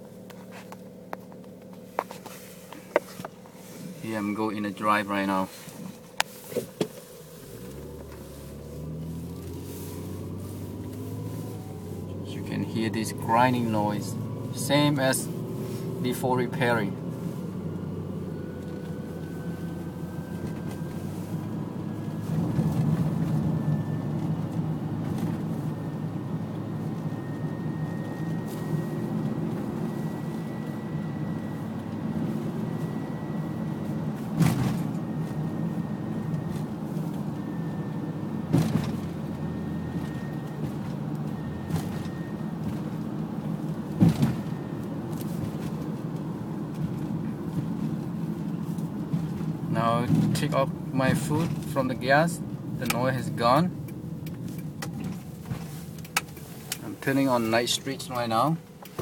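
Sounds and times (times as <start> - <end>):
grinding drone: 7.3 - 26.0
thin whine rising in pitch: 7.4 - 34.1.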